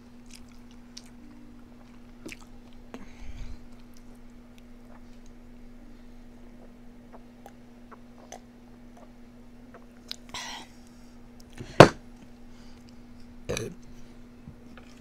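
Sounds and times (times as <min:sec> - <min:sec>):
steady low hum: 0:00.0 - 0:15.0
chewing and mouth clicks: 0:00.2 - 0:03.0, 0:03.7 - 0:05.4.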